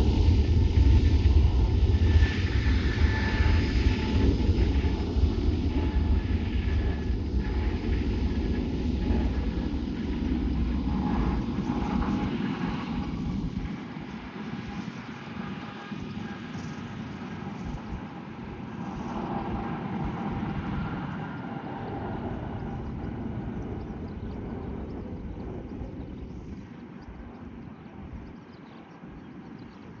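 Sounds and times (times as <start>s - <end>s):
jet engines rumbling and whining: 0.0s - 30.0s.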